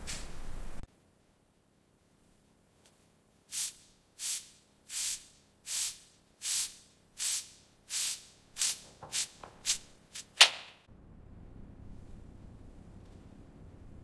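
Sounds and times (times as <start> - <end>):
hissing spray bursts: 3.5 - 10.5.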